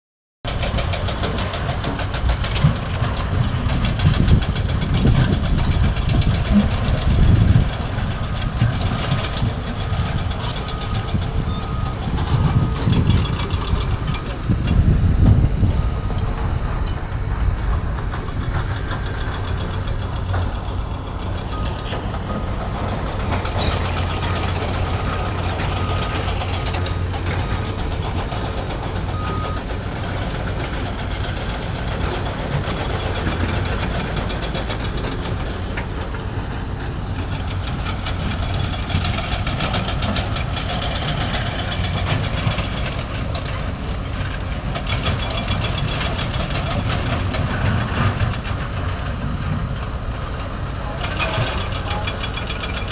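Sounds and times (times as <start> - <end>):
excavator diesel engine drone: 0.5 - 52.9
short beeps: 10.0 - 20.5, 21.4 - 29.7.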